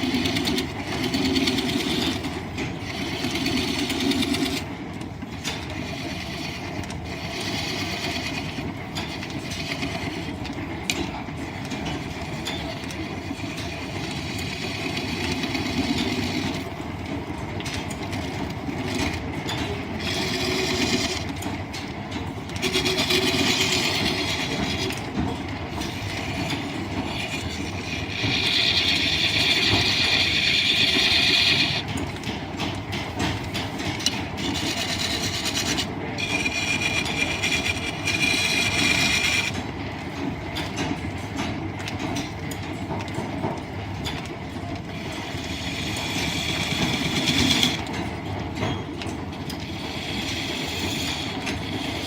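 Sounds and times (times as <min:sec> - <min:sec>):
lathe shafting clattering: 0:00.0 - 0:52.0.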